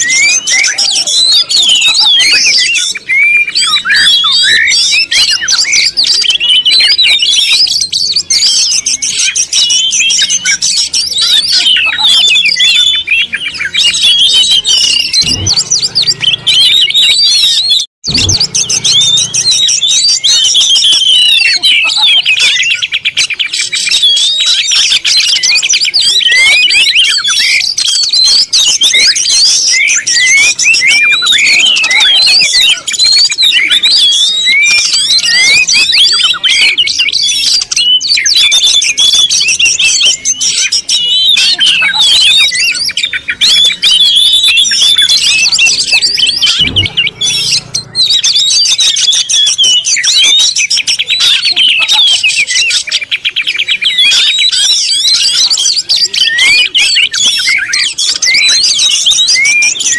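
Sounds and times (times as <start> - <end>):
small birds chirping: 0.0 - 59.9.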